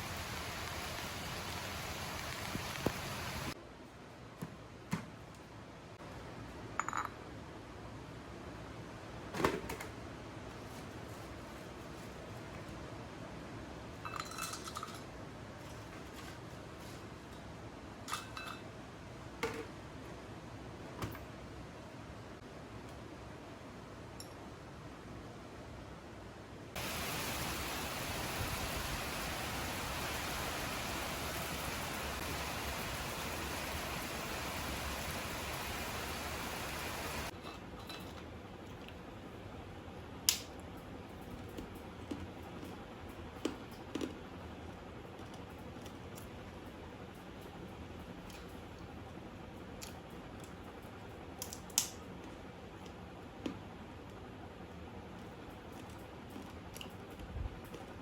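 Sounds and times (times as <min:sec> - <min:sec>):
steady rushing hiss: 0:00.0 - 0:03.6, 0:26.8 - 0:37.3.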